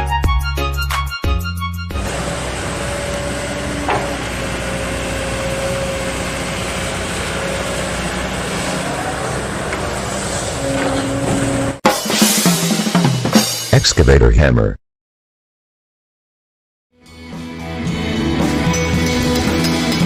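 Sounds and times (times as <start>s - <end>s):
music: 0.0s - 2.0s, 11.8s - 13.8s, 16.9s - 20.0s
excavator engine running: 1.9s - 11.8s.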